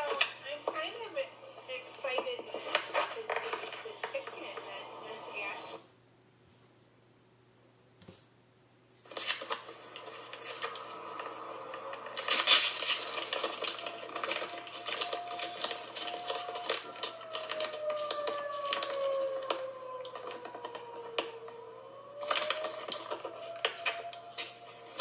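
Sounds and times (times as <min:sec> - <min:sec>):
dense crackling clicks: 0:00.0 - 0:05.5, 0:09.1 - 0:25.0
distant two-tone warning siren: 0:10.2 - 0:25.0.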